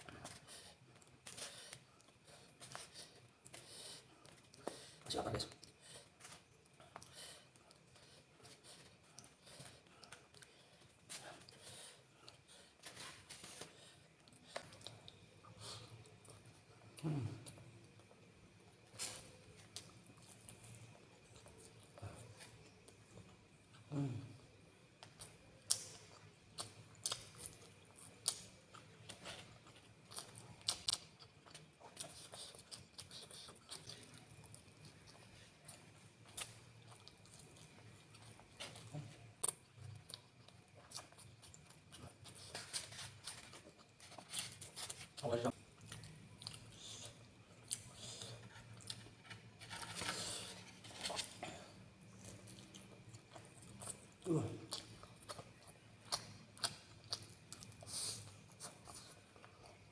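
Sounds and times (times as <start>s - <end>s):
person chewing crunchy food: 24.9s - 59.9s.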